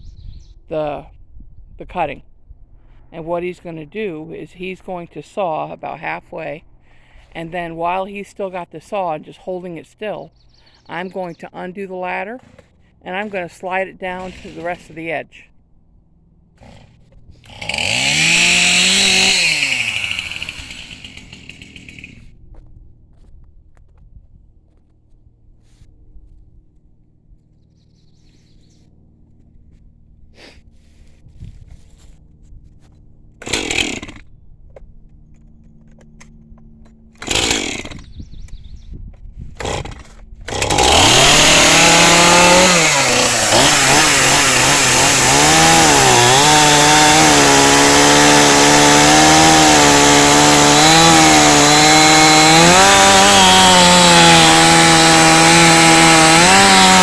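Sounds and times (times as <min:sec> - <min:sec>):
chainsaw running at high speed: 0:12.4 - 0:15.1, 0:16.6 - 0:22.6, 0:32.8 - 0:34.3, 0:37.1 - 0:38.4, 0:39.6 - 0:57.0
starter cord pulls: 0:35.2 - 0:38.1, 0:39.6 - 0:43.9.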